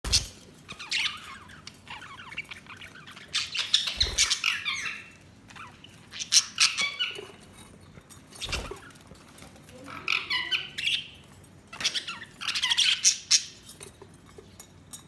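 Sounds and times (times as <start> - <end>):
budgerigars chirping and warbling: 0.1 - 7.6, 8.4 - 9.1, 9.8 - 13.8.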